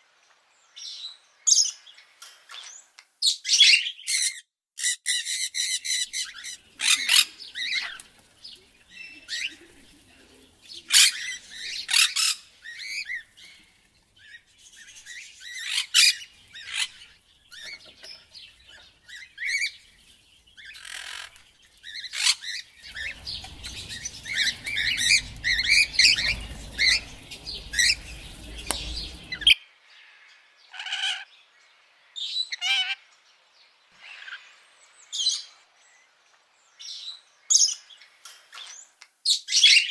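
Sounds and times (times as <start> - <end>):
parrot squawking: 3.6 - 8.1, 10.9 - 13.4
low rumble: 22.7 - 29.6.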